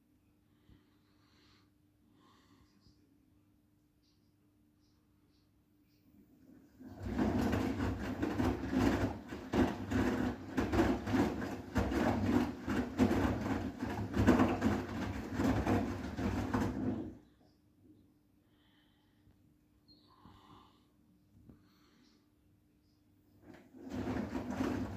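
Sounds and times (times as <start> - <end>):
washing machine drum sloshing: 6.5 - 17.3, 23.4 - 24.9.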